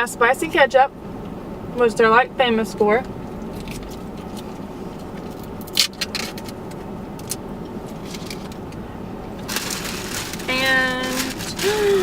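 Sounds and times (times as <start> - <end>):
low hum inside a car: 0.0 - 12.0
food packaging crinkling: 9.4 - 12.0.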